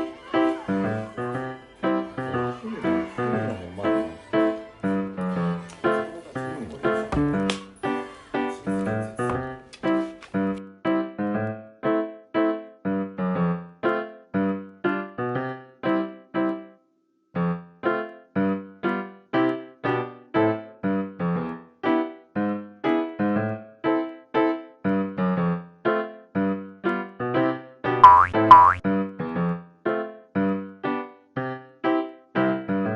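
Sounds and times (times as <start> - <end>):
short keyboard notes: 28.0 - 28.8.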